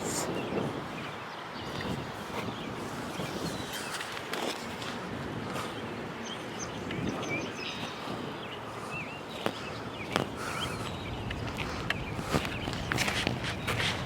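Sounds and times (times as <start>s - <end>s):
footsteps on a path: 0.0s - 14.0s
small birds chirping: 0.0s - 14.0s.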